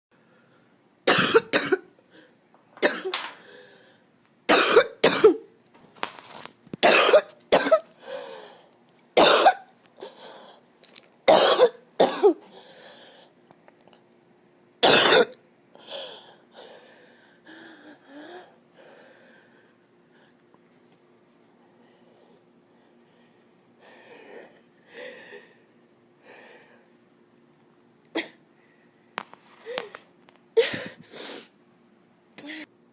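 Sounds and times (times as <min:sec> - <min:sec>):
person coughing harshly: 0:01.1 - 0:01.9, 0:02.8 - 0:03.4, 0:04.5 - 0:05.5, 0:06.8 - 0:07.9, 0:09.2 - 0:09.7, 0:11.3 - 0:12.5, 0:14.8 - 0:15.4, 0:28.2 - 0:28.4.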